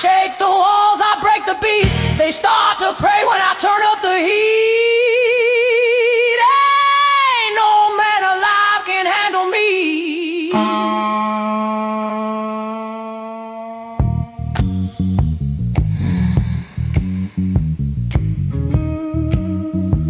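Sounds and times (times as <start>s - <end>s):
music: 0.0s - 3.1s, 9.4s - 20.0s.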